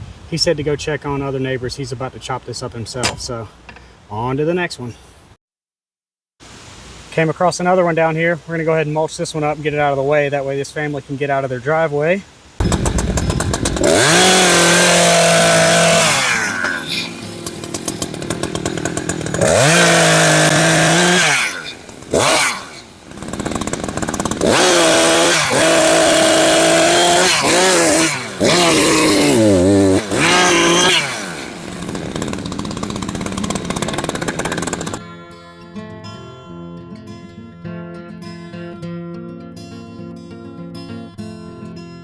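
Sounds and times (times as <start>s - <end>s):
chainsaw revving and cutting: 12.6s - 35.0s
guitar music: 35.0s - 42.0s.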